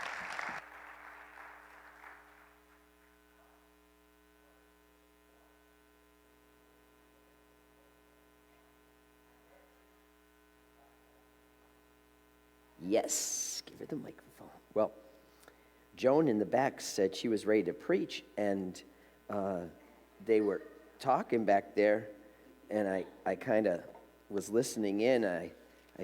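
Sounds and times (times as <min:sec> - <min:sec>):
applause: 0:00.0 - 0:03.1
electrical mains hum: 0:00.0 - 0:26.0.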